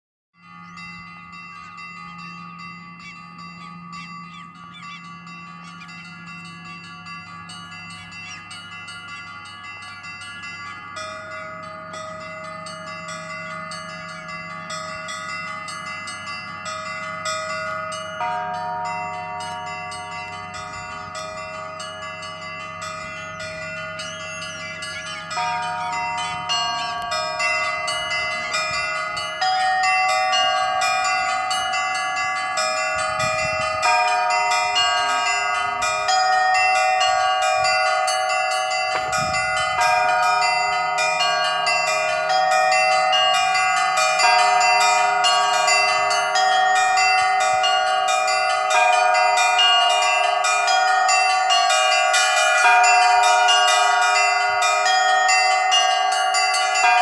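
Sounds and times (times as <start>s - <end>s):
deep bell: 0.4s - 57.0s
large church bells ringing: 0.4s - 57.0s
small high church bells: 0.4s - 57.0s.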